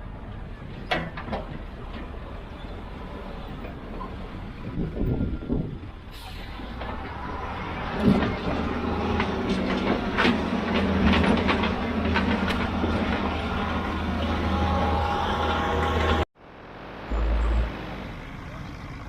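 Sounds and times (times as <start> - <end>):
knocks and clanks: 0.8 - 2.4, 6.7 - 16.2
heavy machine engine running: 6.2 - 16.3.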